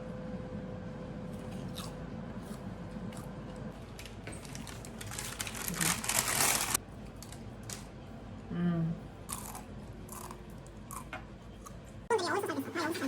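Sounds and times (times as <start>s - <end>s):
biting and crunching food: 1.3s - 7.9s, 9.3s - 11.8s.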